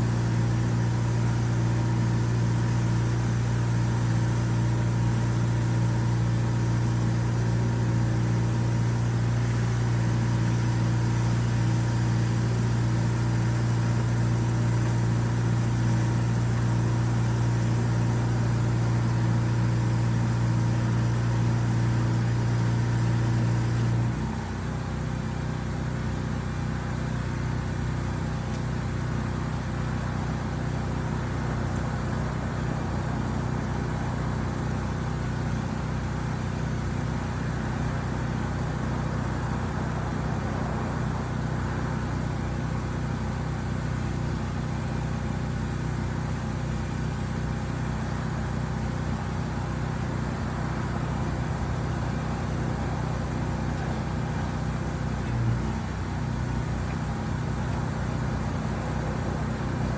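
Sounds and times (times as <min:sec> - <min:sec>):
engine humming: 0:00.0 - 0:24.0.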